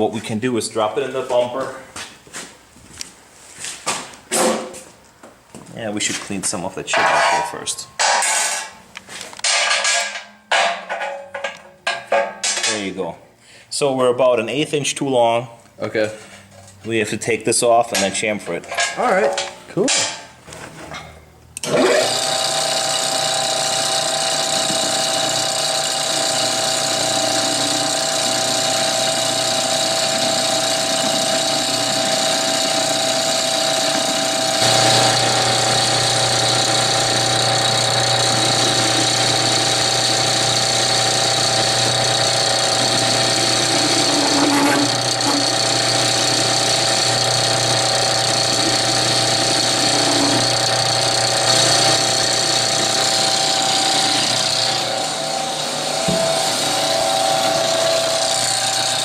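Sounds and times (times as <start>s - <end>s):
metal lathe running: 21.6s - 59.0s.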